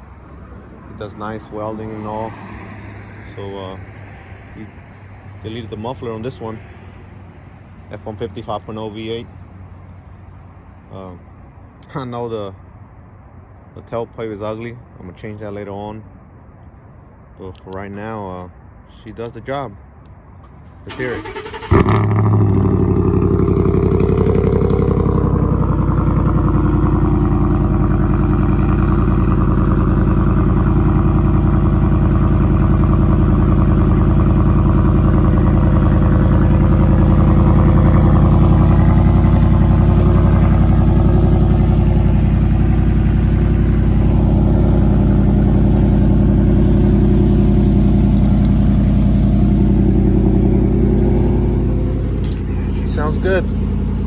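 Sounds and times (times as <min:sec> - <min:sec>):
car engine idling: 0:20.4 - 0:54.0.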